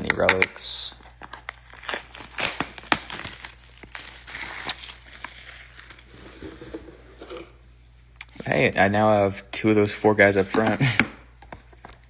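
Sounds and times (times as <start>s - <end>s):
packaging crinkling and crumpling: 0.8s - 7.0s.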